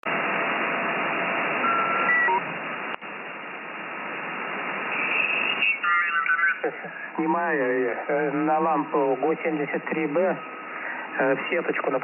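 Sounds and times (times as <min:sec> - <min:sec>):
radio band hiss: 0:00.1 - 0:12.0
short beeping tones: 0:01.6 - 0:02.5.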